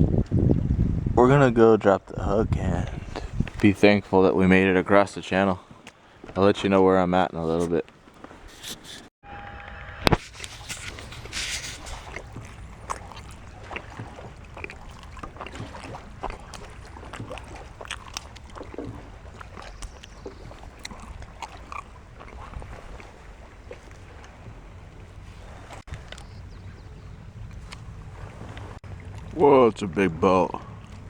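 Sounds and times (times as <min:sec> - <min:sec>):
water slopping against hull: 0:00.0 - 0:01.2, 0:02.1 - 0:04.1, 0:10.1 - 0:31.0
low rumble of wind and water: 0:00.0 - 0:31.0
small knocks on canoe: 0:10.1 - 0:29.4.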